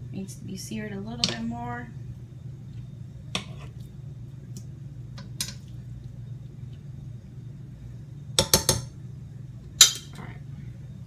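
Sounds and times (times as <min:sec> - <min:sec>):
steady low hum: 0:00.0 - 0:11.0
utensils knocking against pan: 0:08.4 - 0:08.9.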